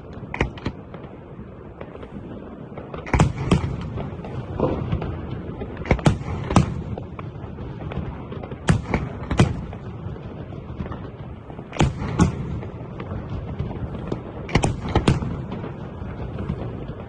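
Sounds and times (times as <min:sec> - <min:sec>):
firework shells bursting: 0:00.0 - 0:01.2, 0:02.8 - 0:10.0, 0:10.8 - 0:17.0
low rumble and crackle: 0:00.0 - 0:17.0.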